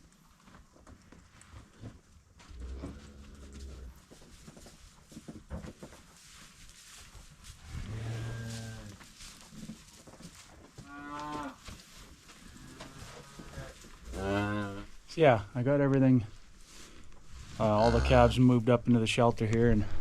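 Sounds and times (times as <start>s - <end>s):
cattle mooing: 7.8s - 8.9s, 10.8s - 11.6s, 12.5s - 14.9s, 17.6s - 18.4s.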